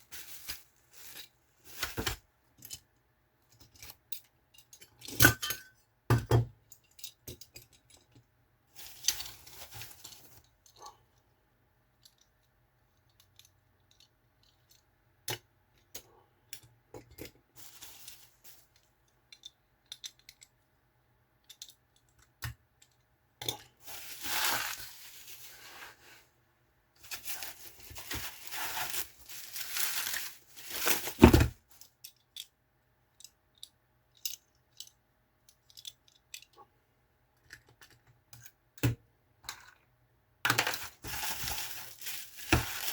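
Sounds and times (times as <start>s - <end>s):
packaging rustling: 0.0s - 2.2s, 8.8s - 10.4s, 17.6s - 18.7s, 23.8s - 26.2s, 27.0s - 31.8s, 40.6s - 42.9s
metal toy cars clicking and knocking: 2.6s - 9.2s, 11.9s - 17.5s, 18.6s - 23.8s, 31.7s - 36.7s.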